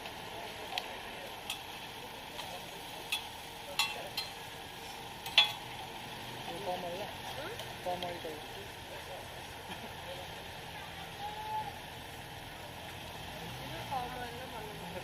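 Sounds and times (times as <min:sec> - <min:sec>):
pancake sizzling in oil: 0:00.0 - 0:08.8.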